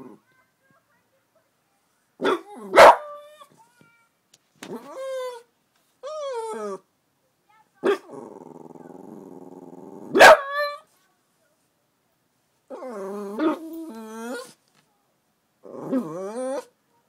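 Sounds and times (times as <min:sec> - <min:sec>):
puppy barking: 0:02.2 - 0:03.2, 0:07.8 - 0:08.1, 0:10.1 - 0:10.8
puppy whining: 0:04.6 - 0:06.9, 0:12.7 - 0:14.6, 0:15.6 - 0:16.8
puppy growling: 0:07.9 - 0:10.2, 0:12.7 - 0:14.6, 0:15.6 - 0:16.7.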